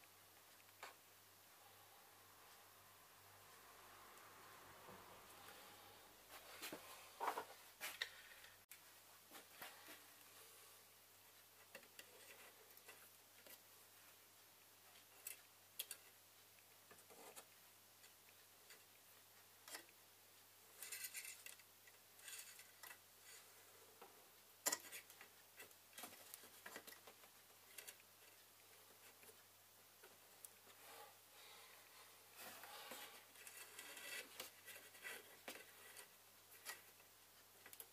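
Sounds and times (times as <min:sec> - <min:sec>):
faint clicks and taps: 0:00.3 - 0:01.0, 0:32.4 - 0:37.9.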